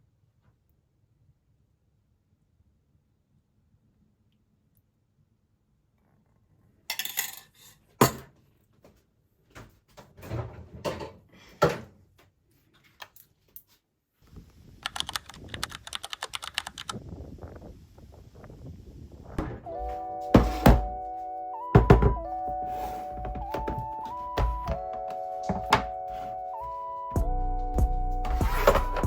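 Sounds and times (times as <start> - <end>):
kitchen utensils and dishes clicking: 6.9 - 8.3.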